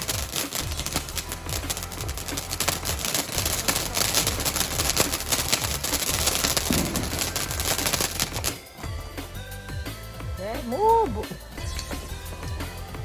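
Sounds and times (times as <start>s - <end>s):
firework hissing spray: 0.0s - 8.8s
firework crackling pops: 0.0s - 8.9s.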